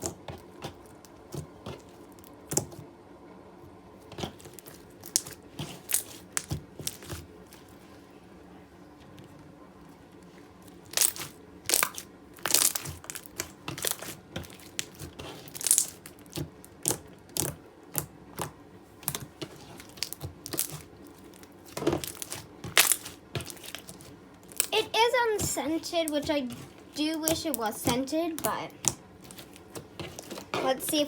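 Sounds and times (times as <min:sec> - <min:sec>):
slime clicking and popping: 0:10.9 - 0:19.3, 0:19.9 - 0:20.8, 0:22.0 - 0:23.9.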